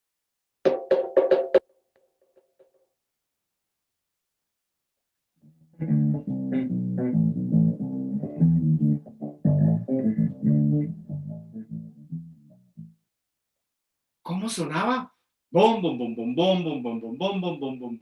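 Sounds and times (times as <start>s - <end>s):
electric bass guitar notes: 5.5s - 13.0s.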